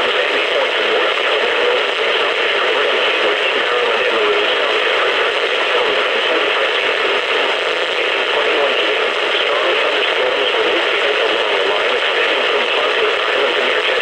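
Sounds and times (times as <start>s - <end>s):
radio static hiss: 0.0s - 14.0s.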